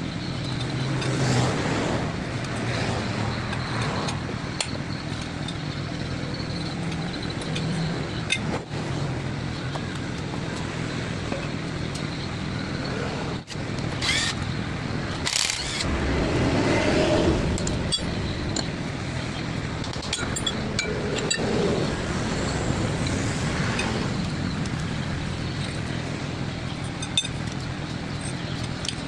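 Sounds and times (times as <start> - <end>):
traffic background noise: 0.0 - 29.0
low rumble: 15.1 - 26.4.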